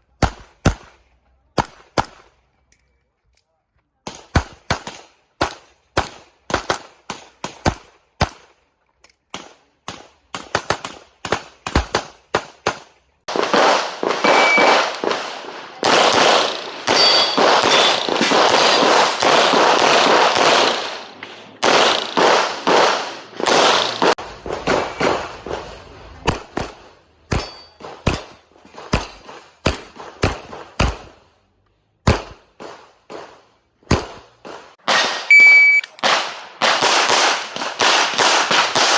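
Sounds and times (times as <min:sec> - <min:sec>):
pistol shots: 0:09.3 - 0:31.2, 0:32.0 - 0:38.9
short metallic ring: 0:16.9 - 0:17.4.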